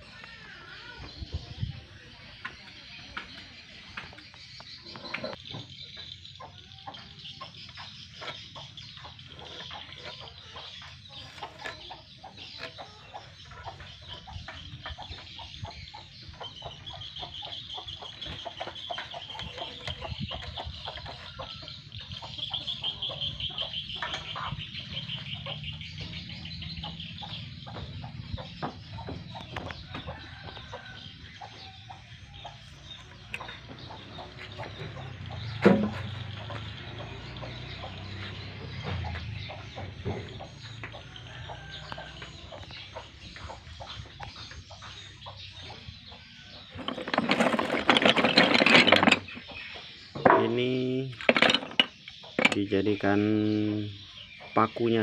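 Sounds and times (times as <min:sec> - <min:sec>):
chickens clucking: 0:00.0 - 0:55.0.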